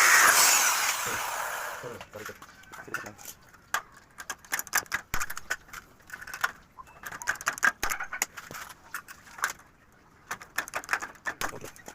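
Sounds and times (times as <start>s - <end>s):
hard objects clicking and tapping: 2.8s - 8.6s, 10.3s - 11.9s.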